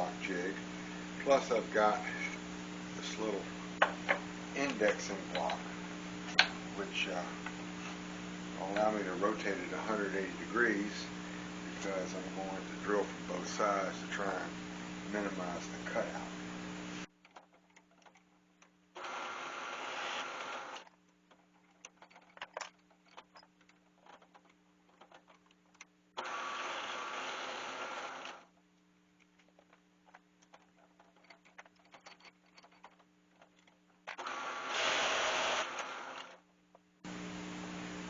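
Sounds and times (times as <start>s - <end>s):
drill press boring into wood: 19.0s - 20.9s, 26.2s - 28.5s, 34.1s - 36.4s.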